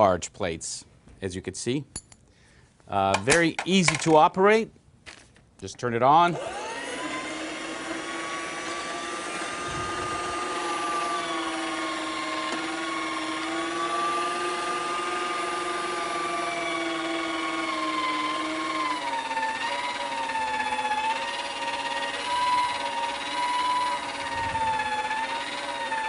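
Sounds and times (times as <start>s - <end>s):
meat grinder motor whining: 6.4s - 26.0s.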